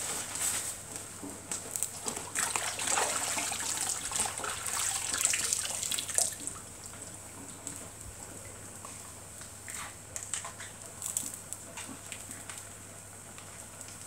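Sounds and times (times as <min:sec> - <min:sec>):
liquid pouring and splashing: 0:02.0 - 0:07.8.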